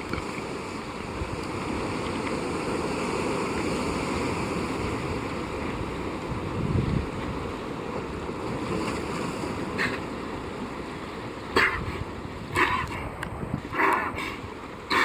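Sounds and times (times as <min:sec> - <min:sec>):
surf: 0:00.0 - 0:15.0
wind: 0:00.0 - 0:15.0
seal coughing: 0:09.7 - 0:10.1, 0:11.4 - 0:15.0.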